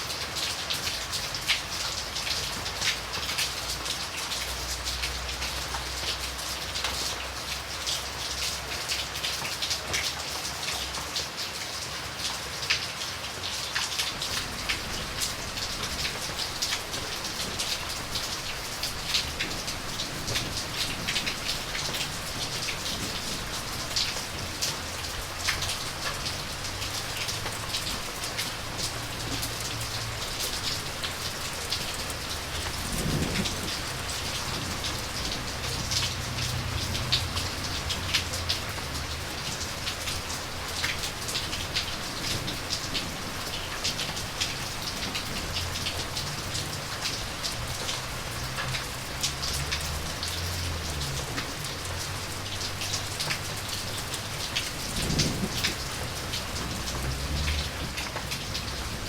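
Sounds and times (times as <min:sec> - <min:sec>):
rain falling: 0:00.0 - 0:59.0
distant thunder rumbling: 0:14.2 - 0:39.4, 0:40.0 - 0:59.0.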